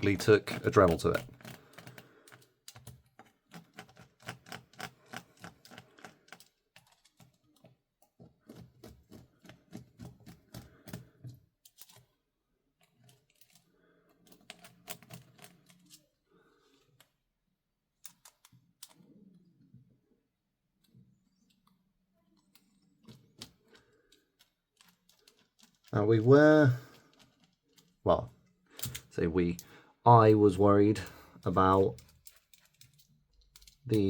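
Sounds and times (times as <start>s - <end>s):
small rifle parts clicking: 21.4s - 30.4s, 31.0s - 34.0s.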